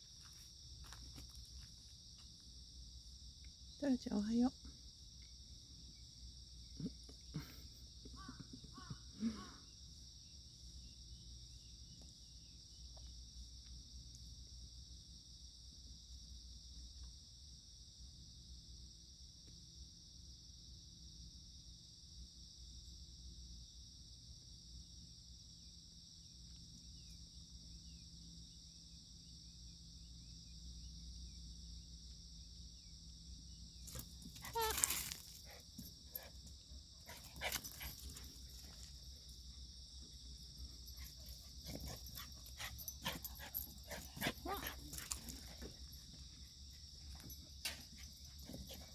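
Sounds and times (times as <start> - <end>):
high-pitched insect chorus: 0.0 - 48.9
crickets shrilling: 32.6 - 48.9
short insect chirps: 32.8 - 46.2.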